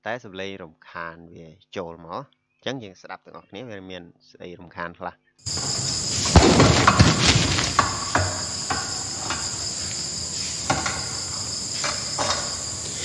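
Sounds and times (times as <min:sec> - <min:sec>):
sharp knocks: 0:05.5 - 0:13.0
wind buffeting microphone: 0:05.5 - 0:13.0.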